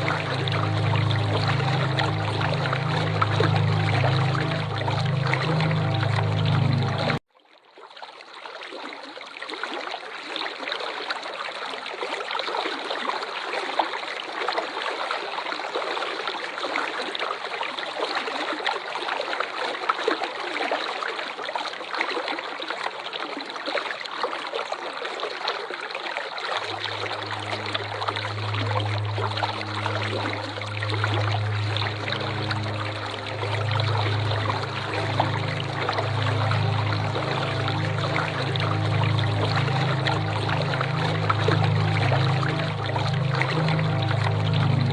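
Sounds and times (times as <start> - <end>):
low steady drone: 0.0 - 7.2, 26.6 - 44.9
waterfall rushing: 0.0 - 7.2, 26.6 - 44.9.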